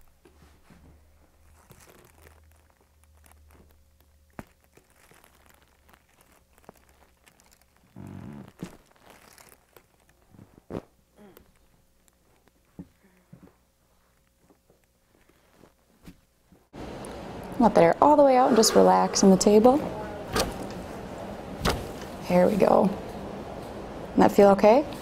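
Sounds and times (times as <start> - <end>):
rustling and handling noise: 0.0 - 17.2.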